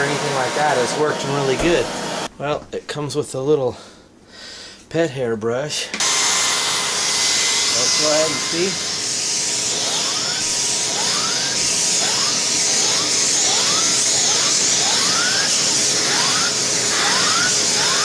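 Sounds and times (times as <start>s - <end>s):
vacuum cleaner air rush: 0.0s - 2.3s, 6.0s - 18.0s
short rising whine: 9.7s - 18.0s.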